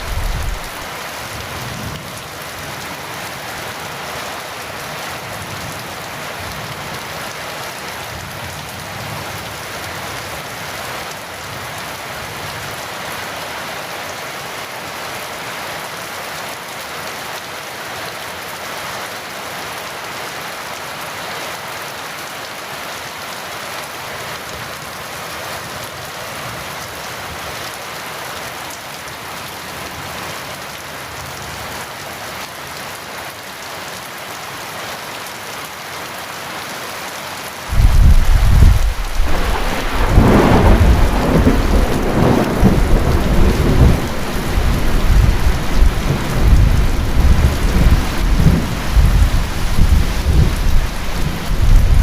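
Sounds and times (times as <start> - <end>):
thunderclap and rumbling thunder: 0.0 - 0.8, 37.7 - 52.0
heavy rain falling: 0.0 - 52.0.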